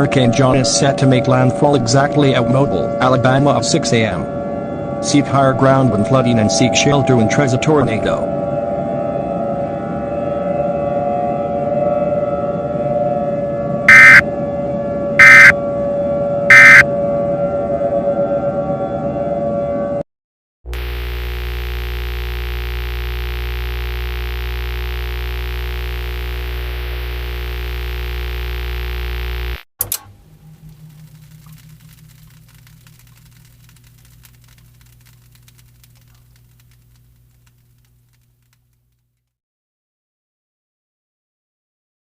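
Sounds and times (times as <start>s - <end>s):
digital data tone bursts: 13.9s - 14.2s, 15.2s - 15.5s, 16.5s - 16.8s
low buzz with overtones: 13.9s - 14.2s, 15.2s - 15.5s, 16.5s - 16.8s, 20.7s - 39.0s
steady droning tone: 20.7s - 38.6s.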